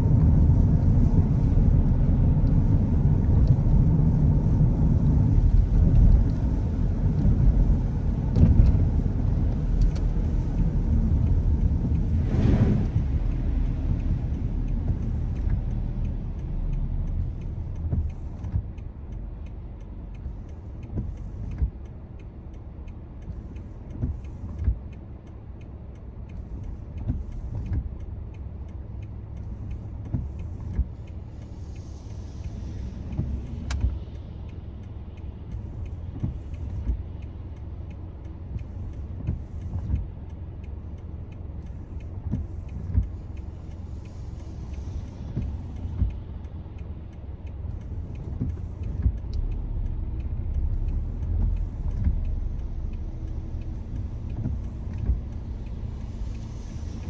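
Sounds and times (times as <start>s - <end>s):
car tyres on wet road: 0.0s - 57.0s
light taps: 35.2s - 49.6s.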